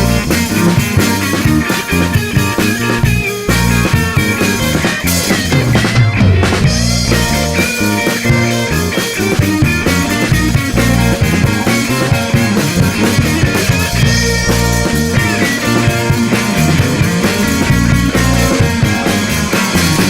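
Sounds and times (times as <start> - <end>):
bass guitar: 0.0 - 20.0
drum kit: 0.0 - 20.0
electric guitar: 0.0 - 20.0.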